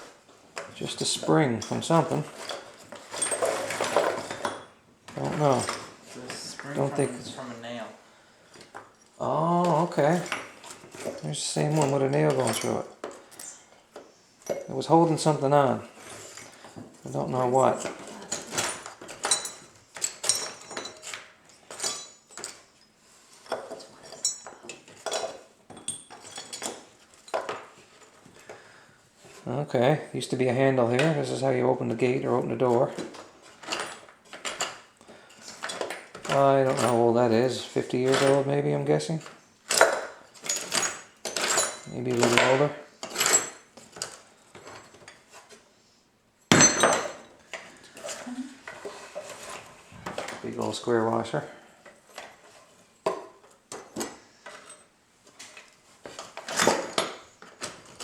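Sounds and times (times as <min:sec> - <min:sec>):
metal hardware clinking in toolbox: 0:01.5 - 0:07.4, 0:10.1 - 0:13.5, 0:17.6 - 0:28.1, 0:39.2 - 0:45.2.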